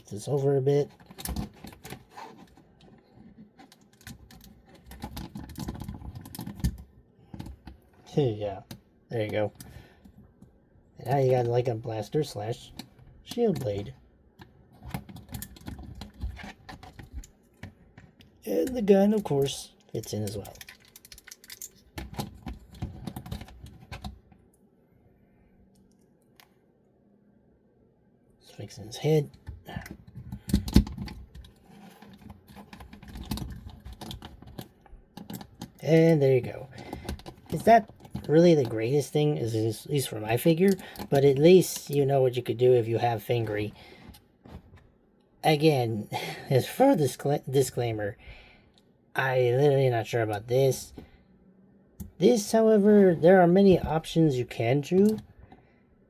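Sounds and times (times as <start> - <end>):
plastic toy parts clicking: 20.0 - 23.5.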